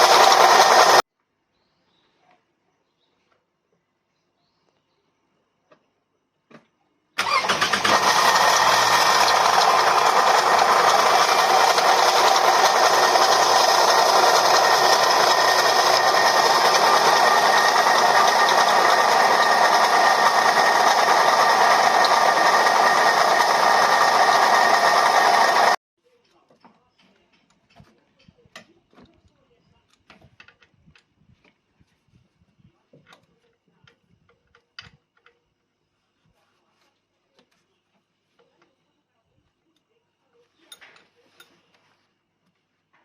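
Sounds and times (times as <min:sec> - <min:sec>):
water pump whining: 0:00.0 - 0:01.0, 0:07.2 - 0:25.8
car engine starting: 0:07.2 - 0:19.3.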